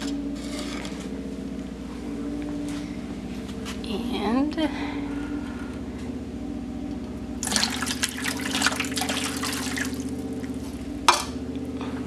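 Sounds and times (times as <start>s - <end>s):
low hum: 0.0s - 12.0s
water splashing and trickling: 7.4s - 10.7s.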